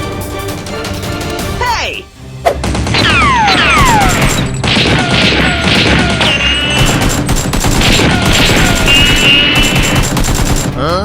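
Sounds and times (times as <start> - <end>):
background music: 0.0 - 11.0
gunfire sound effects: 2.6 - 10.8.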